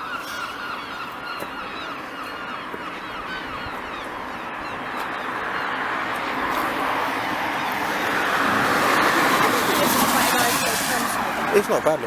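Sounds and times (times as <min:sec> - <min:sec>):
seagulls calling: 0:00.0 - 0:12.0
steady rushing noise: 0:06.2 - 0:12.0.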